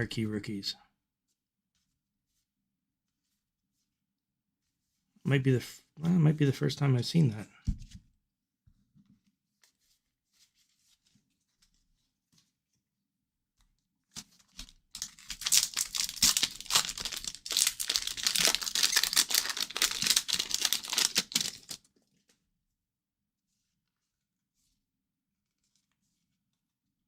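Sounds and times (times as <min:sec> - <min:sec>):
foil wrapper tearing and crinkling: 0:14.9 - 0:21.8.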